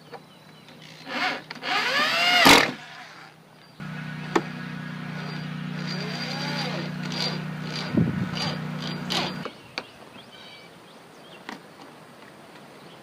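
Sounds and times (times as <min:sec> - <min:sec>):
cordless drill driving a fastener: 0:01.0 - 0:03.3, 0:05.8 - 0:09.5
steady low hum: 0:03.8 - 0:09.5.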